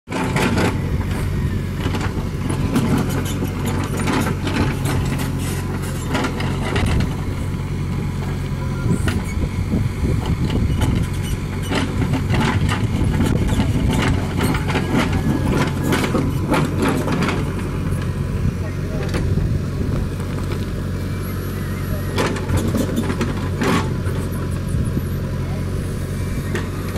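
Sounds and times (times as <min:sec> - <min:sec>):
diesel engine running: 0:00.1 - 0:26.9.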